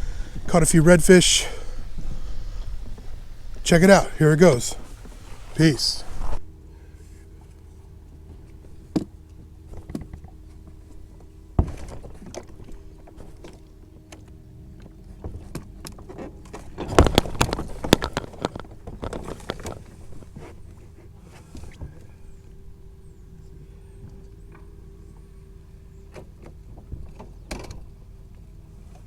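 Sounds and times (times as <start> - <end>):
knocks and clatter on a kayak: 0.0 - 4.0, 8.3 - 22.2, 26.1 - 29.0
steady low hum: 0.0 - 8.9.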